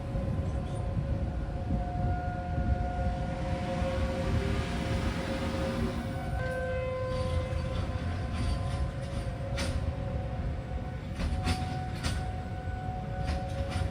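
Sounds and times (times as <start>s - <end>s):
warning siren steady tone: 0.2s - 7.3s.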